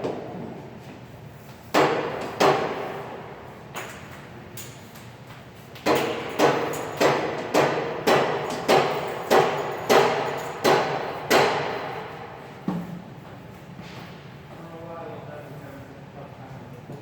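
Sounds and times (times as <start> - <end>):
hammer blows ringing: 5.9 - 12.2.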